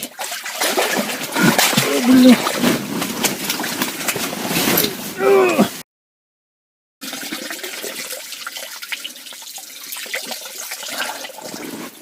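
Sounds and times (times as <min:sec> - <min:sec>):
water splashing and sloshing: 0:00.0 - 0:05.2, 0:07.0 - 0:12.0
water dripping: 0:07.0 - 0:11.6.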